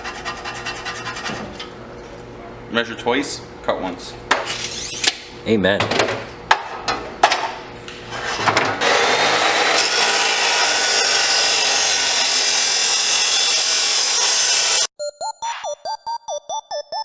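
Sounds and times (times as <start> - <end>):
power saw cutting metal pipe: 8.1 - 14.9.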